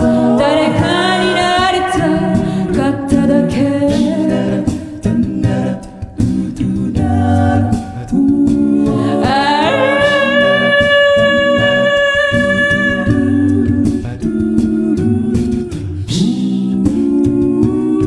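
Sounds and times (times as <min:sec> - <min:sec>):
vocal bass line: 0:00.0 - 0:18.0
vocal percussion: 0:00.0 - 0:18.0.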